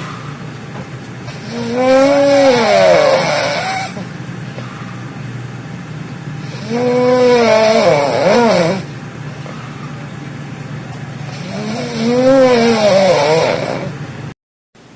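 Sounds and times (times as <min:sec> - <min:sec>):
person snoring loudly: 0:01.3 - 0:04.2, 0:06.4 - 0:09.0, 0:11.3 - 0:14.0.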